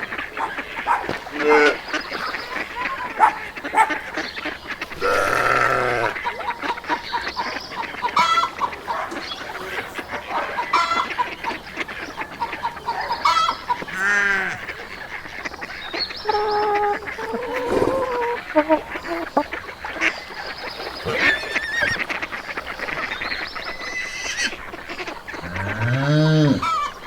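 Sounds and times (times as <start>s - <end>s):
poultry calling: 0.0s - 27.0s
long drawn-out animal calls: 4.8s - 6.8s, 12.8s - 14.8s, 16.2s - 20.0s, 20.9s - 22.1s, 23.8s - 27.0s.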